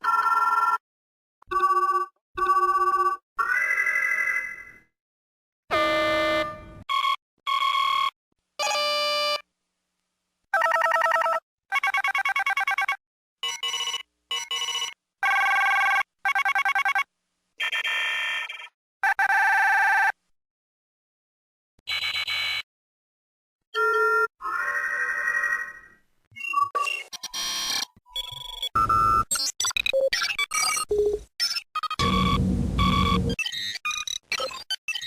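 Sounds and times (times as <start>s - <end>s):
electronic computer beeps and chirps: 26.4s - 35.0s.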